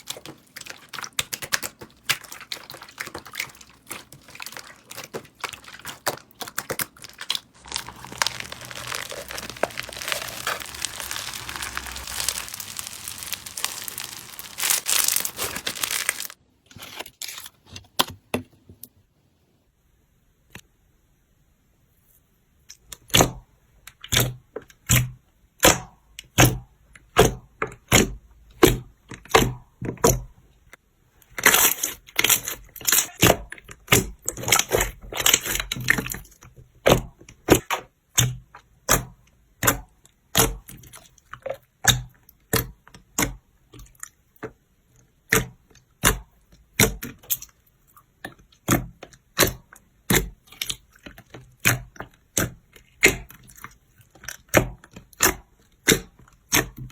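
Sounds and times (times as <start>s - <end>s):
slime crackling: 2.2s - 16.4s
slime squished by hand popping: 7.6s - 16.4s.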